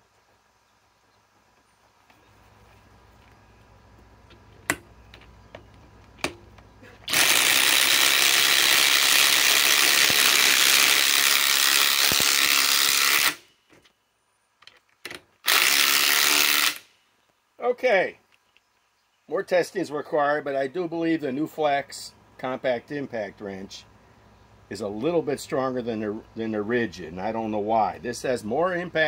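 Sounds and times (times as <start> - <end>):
impact wrench hammering: 7.1 - 13.4.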